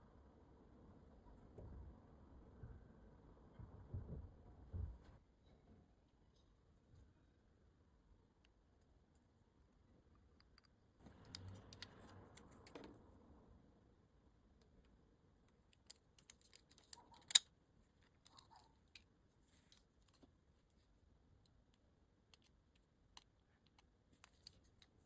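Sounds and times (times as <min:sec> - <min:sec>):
small parts clicking and tapping: 0:10.1 - 0:13.0, 0:15.5 - 0:20.3, 0:21.4 - 0:25.0.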